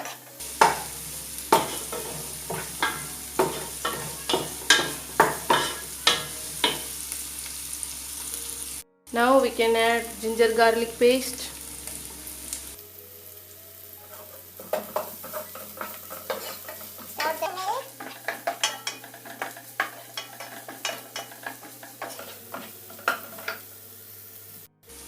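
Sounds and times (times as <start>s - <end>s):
spoon scraping a pan: 0.0s - 7.2s, 14.0s - 24.0s
food sizzling in hot oil: 0.0s - 25.0s.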